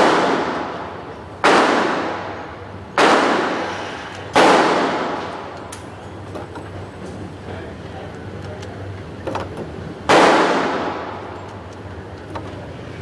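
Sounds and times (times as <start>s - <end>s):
gunshots with echo: 0.0s - 5.5s, 10.1s - 11.2s.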